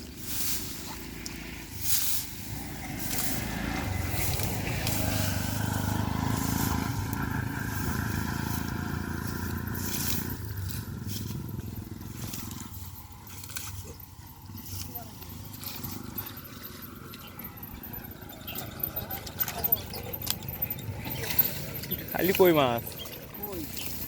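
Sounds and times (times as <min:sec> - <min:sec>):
motor engine hum: 0:00.0 - 0:24.0.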